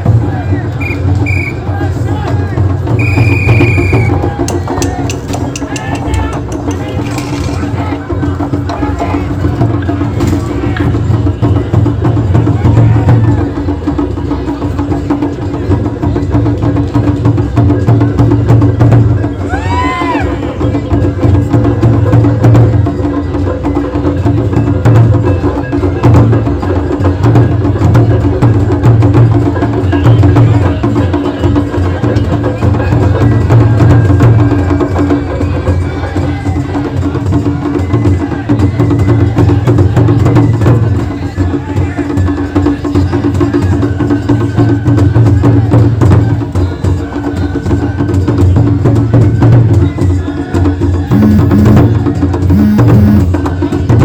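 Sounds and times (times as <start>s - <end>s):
drums: 0.0s - 54.0s
wooden percussion: 0.0s - 54.0s
held steady tone: 51.1s - 53.4s.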